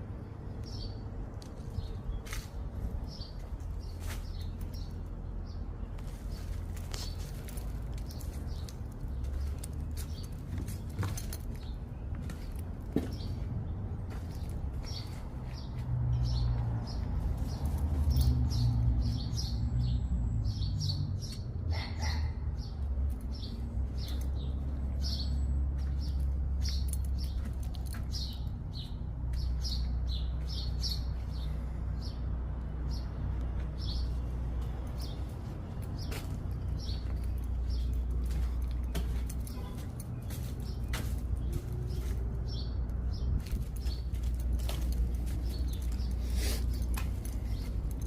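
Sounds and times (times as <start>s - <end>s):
small birds chirping: 0.2s - 48.0s.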